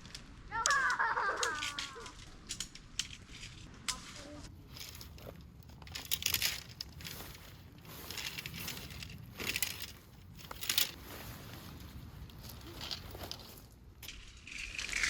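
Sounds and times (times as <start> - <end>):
crunching and rustling: 0.0 - 15.0
wind rumble on microphone: 5.1 - 15.0.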